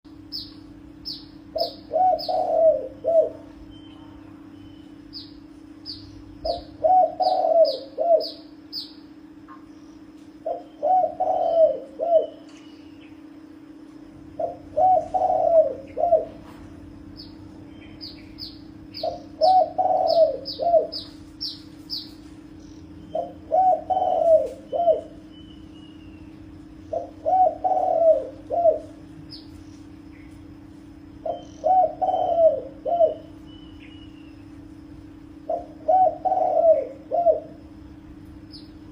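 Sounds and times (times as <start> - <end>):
dove cooing: 1.4 - 3.9, 6.4 - 8.9, 10.4 - 12.6, 14.2 - 17.2, 18.4 - 22.1, 23.0 - 29.5, 31.1 - 33.5, 35.4 - 37.7
high bird chirps: 31.3 - 32.4.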